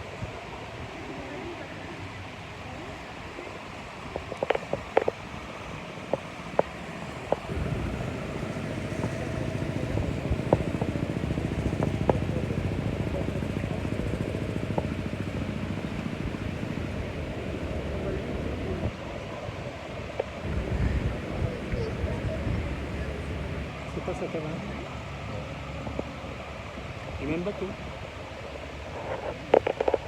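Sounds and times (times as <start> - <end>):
engine running: 0.0 - 30.0.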